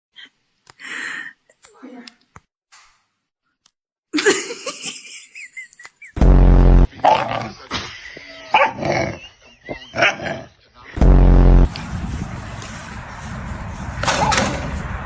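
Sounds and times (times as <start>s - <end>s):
dog barking: 8.5s - 8.9s, 10.0s - 10.3s.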